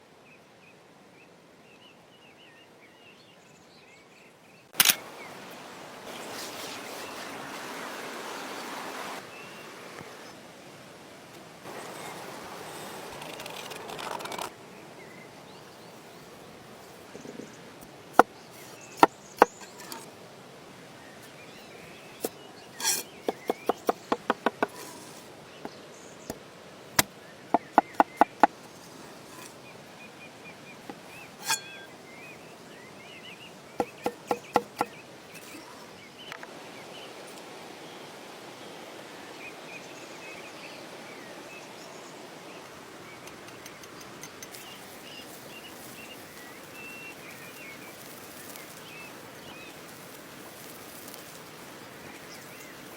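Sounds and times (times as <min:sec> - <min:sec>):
steady hiss: 0:04.8 - 0:52.9
faint bird chirps: 0:27.2 - 0:52.9.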